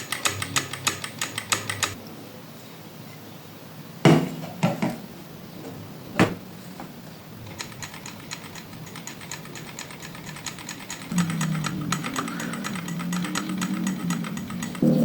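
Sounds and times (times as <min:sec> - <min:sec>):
sewing machine clicking: 0:00.0 - 0:02.0, 0:07.4 - 0:15.0.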